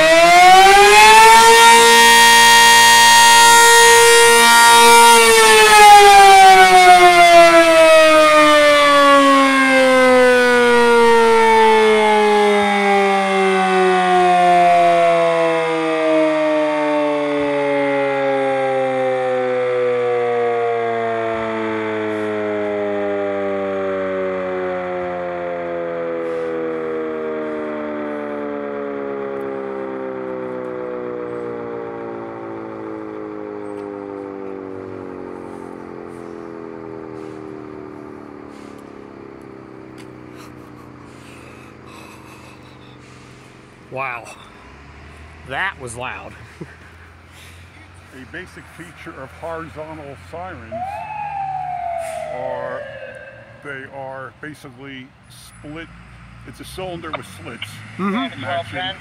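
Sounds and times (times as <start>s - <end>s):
fire siren winding down: 0.0s - 59.0s.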